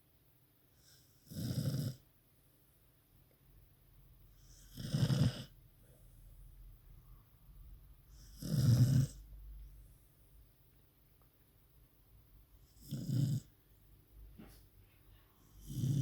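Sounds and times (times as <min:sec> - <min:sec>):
dog snoring: 0:00.8 - 0:02.1, 0:04.3 - 0:06.1, 0:08.1 - 0:09.3, 0:12.6 - 0:13.6, 0:15.4 - 0:16.0.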